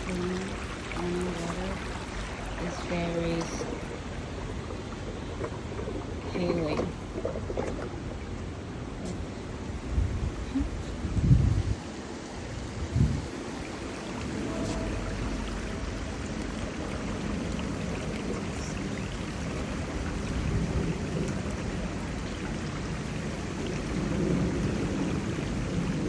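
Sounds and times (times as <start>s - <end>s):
deep rumble: 0.0s - 11.8s, 12.5s - 13.4s
running water splashing: 0.0s - 26.0s.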